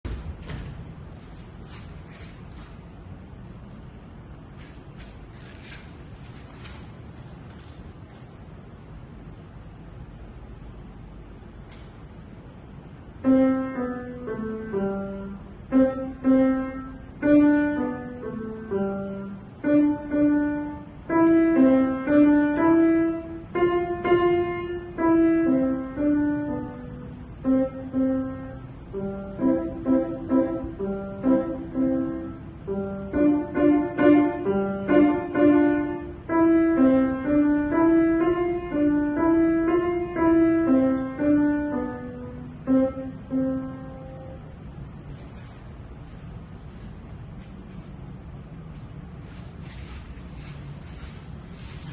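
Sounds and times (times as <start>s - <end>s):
solo piano melody: 13.1s - 45.2s.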